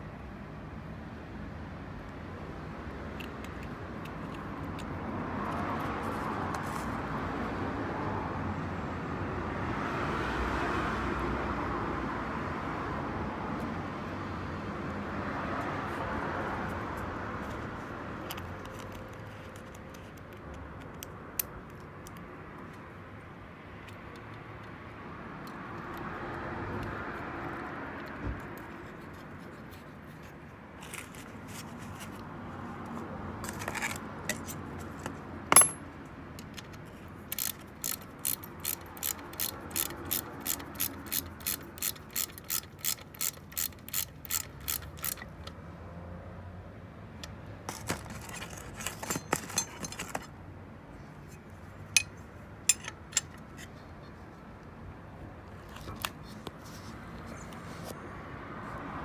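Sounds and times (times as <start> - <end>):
metal clinks: 35.5 - 35.9, 48.8 - 50.2
ratchet wrench clicking: 35.5 - 45.6.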